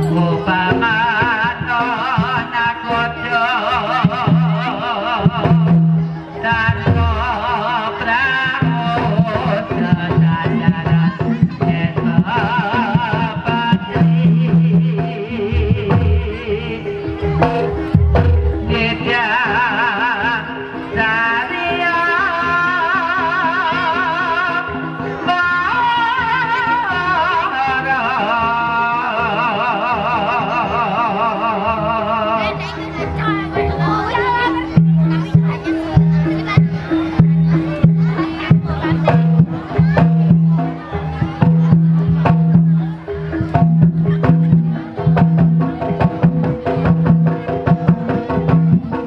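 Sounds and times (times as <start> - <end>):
high melody with vibrato: 0.0 - 3.4
steady lower accompaniment: 0.0 - 49.0
fast drum strokes: 17.2 - 19.1.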